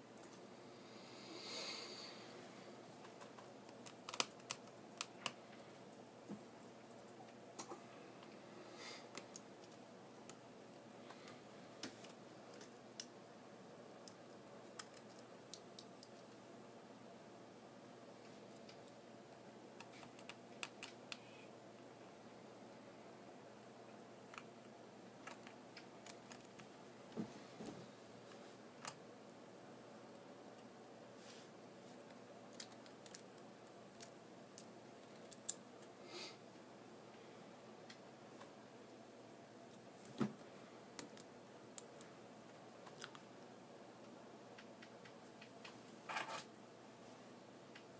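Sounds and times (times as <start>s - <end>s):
low steady hiss: 0.0s - 47.9s
soft scrapes: 31.2s - 32.0s.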